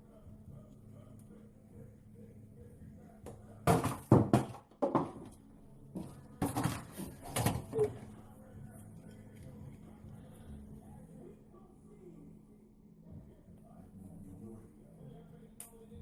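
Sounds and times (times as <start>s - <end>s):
objects knocking and thumping: 3.3s - 5.4s, 6.0s - 8.0s.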